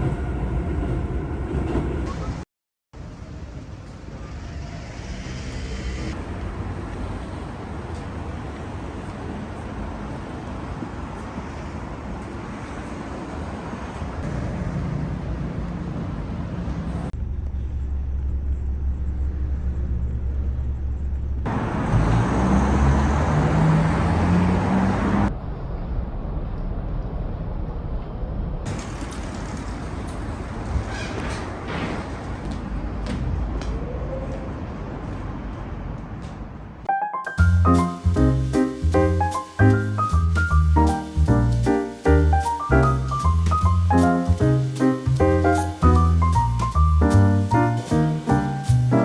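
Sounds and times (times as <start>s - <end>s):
road traffic rumble: 3.0s - 26.4s, 28.7s - 49.0s
vehicle engine pulling away: 17.2s - 25.3s, 28.7s - 30.7s, 37.4s - 49.0s.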